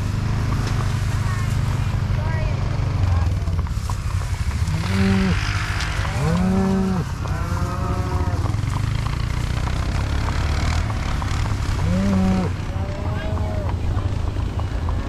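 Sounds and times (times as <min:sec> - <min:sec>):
low rumble: 0:00.0 - 0:15.0
cattle mooing: 0:04.6 - 0:08.7, 0:11.8 - 0:13.8.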